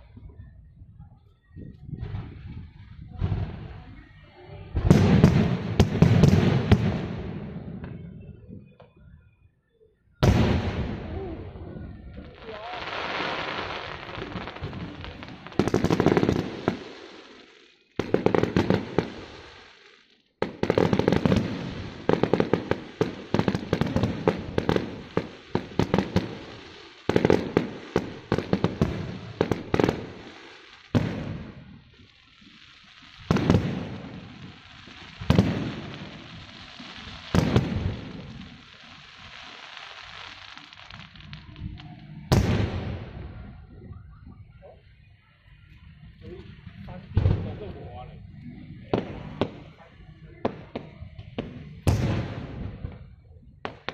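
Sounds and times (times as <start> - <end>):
fireworks bangs and crackling: 0.0 - 9.0, 10.2 - 53.9.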